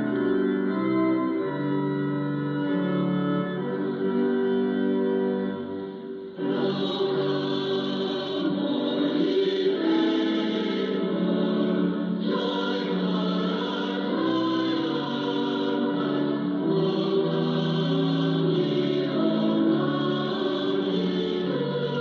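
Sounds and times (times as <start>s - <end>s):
choir singing over radio: 6.4s - 22.0s.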